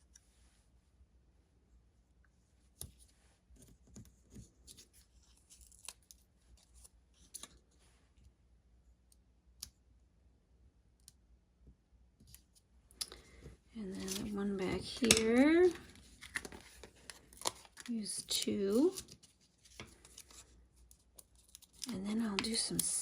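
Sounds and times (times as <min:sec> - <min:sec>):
paper rustling: 0:13.1 - 0:23.0.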